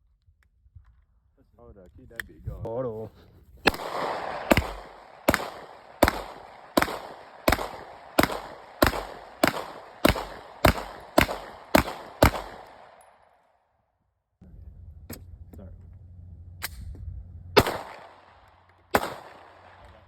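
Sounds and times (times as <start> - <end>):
gunshots with echo: 3.6 - 13.3, 17.6 - 20.0.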